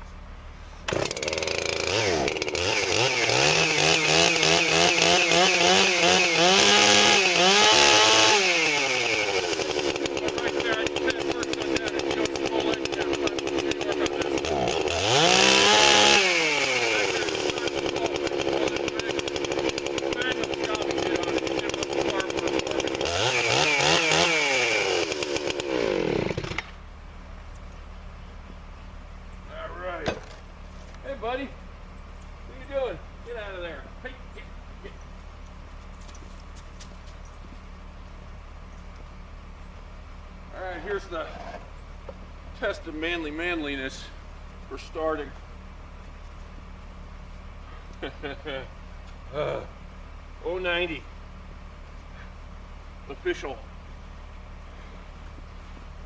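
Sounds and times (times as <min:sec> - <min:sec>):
chainsaw engine revving: 0:00.8 - 0:26.8, 0:47.6 - 0:48.7.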